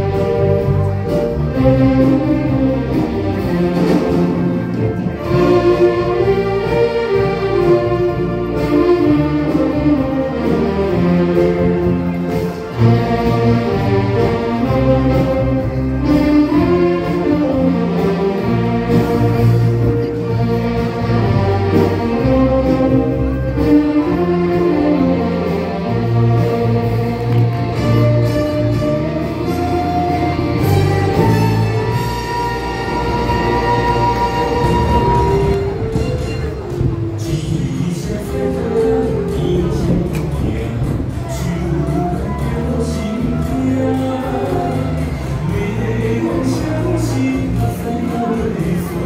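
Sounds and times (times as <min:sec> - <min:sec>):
instrumental music: 0:00.0 - 0:49.0.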